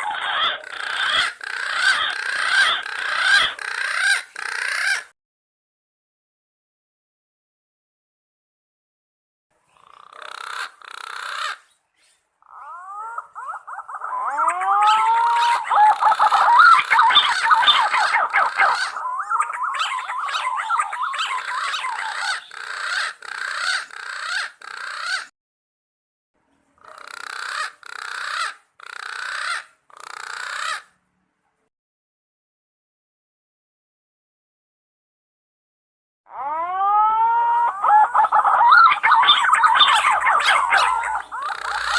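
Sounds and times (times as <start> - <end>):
pigeon calling: 0.0 - 5.1, 9.9 - 25.3, 26.8 - 30.9, 36.3 - 41.9.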